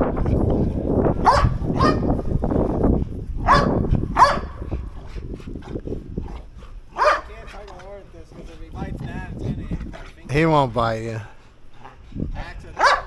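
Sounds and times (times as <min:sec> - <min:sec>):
dog barking: 0:01.2 - 0:02.4, 0:03.4 - 0:05.0, 0:06.9 - 0:07.6, 0:12.8 - 0:13.0.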